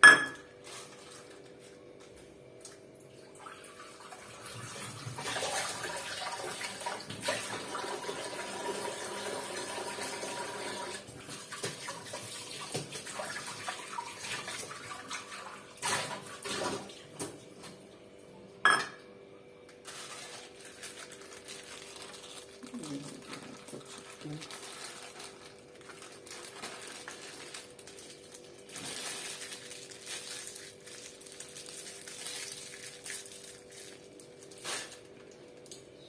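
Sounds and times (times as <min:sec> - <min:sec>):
dishes and spoon clinking: 0:00.0 - 0:00.5, 0:18.7 - 0:19.0.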